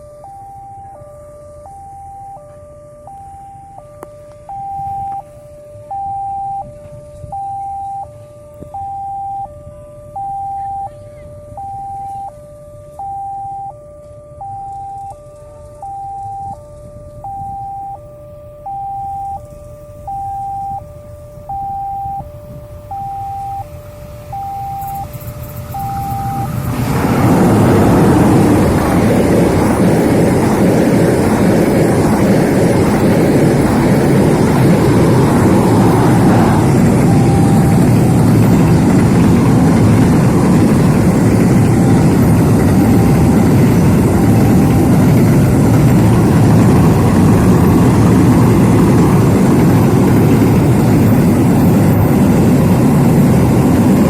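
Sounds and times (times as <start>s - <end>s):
train rumbling past: 23.7s - 54.0s.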